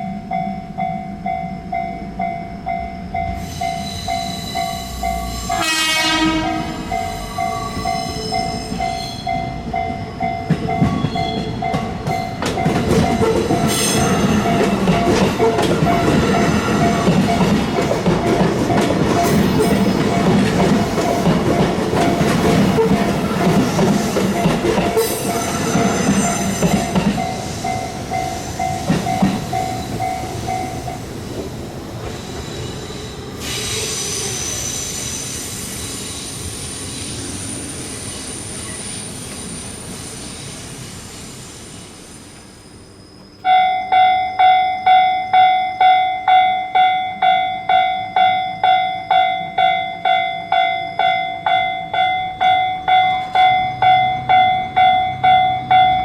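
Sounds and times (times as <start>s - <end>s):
crossing bell ringing: 0.0s - 31.1s, 43.4s - 56.0s
train rumbling over crossing: 0.0s - 56.0s
electronic warning bell: 43.5s - 56.0s.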